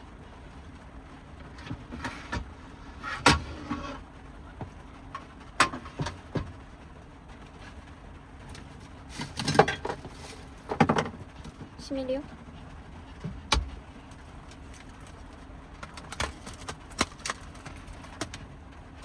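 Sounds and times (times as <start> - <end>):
heavy rain on vehicle: 0.0 - 1.7, 4.0 - 19.0
knocks and clicks of handling: 4.6 - 6.6, 8.5 - 11.8, 13.2 - 18.5.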